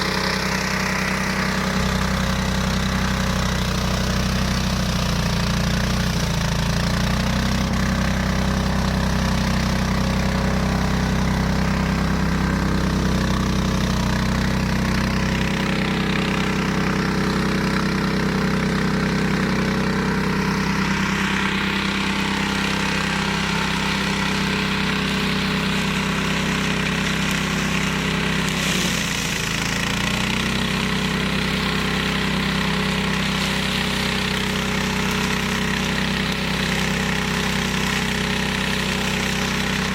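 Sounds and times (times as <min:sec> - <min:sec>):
mower engine running: 0:00.0 - 0:39.9.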